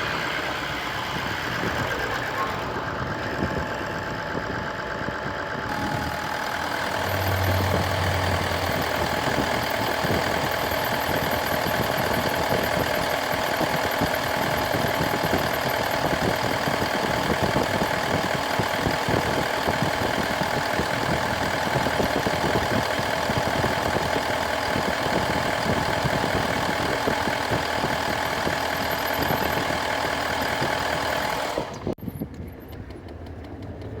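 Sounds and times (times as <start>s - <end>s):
car engine idling: 0.0s - 34.0s
steady whistle from engine: 5.7s - 13.0s.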